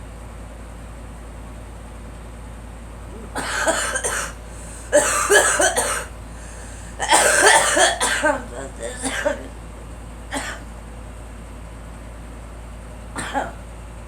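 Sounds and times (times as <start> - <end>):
girl coughing: 3.2 - 9.5, 10.3 - 10.6, 13.2 - 13.6.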